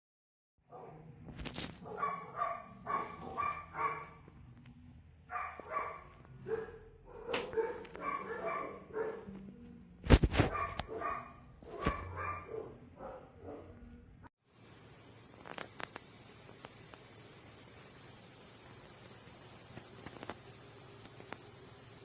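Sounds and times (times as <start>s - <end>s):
dog barking and yipping: 0.7s - 1.1s, 1.8s - 4.3s, 5.3s - 9.4s, 10.4s - 13.9s.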